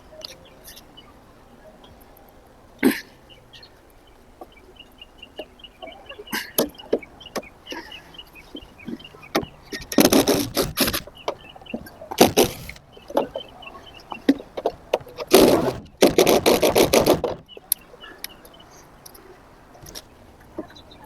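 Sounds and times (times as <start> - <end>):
clicks: 5.4 - 20.8.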